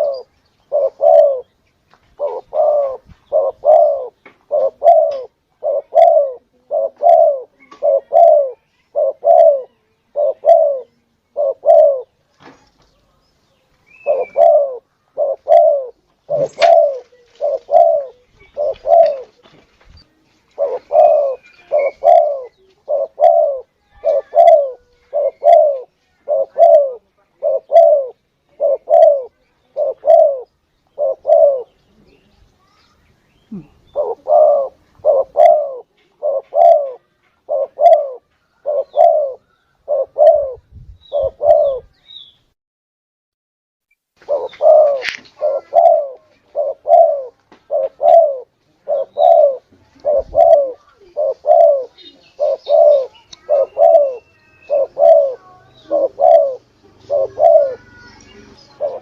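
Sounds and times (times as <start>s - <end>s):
dove cooing: 0.0s - 1.6s, 2.2s - 12.2s, 13.9s - 19.5s, 20.5s - 32.1s, 33.5s - 42.0s, 44.2s - 59.0s.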